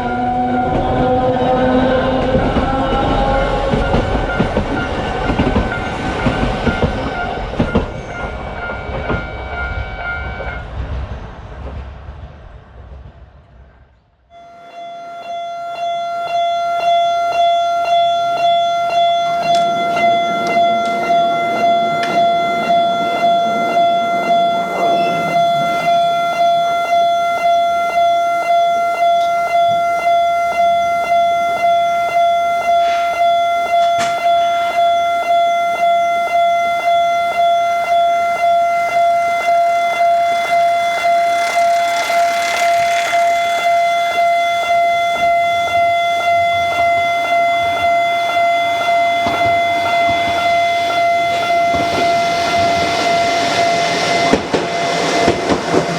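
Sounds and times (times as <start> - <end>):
level crossing alarm bell: 3.0 - 10.6, 14.3 - 55.8
hiss: 40.4 - 44.2.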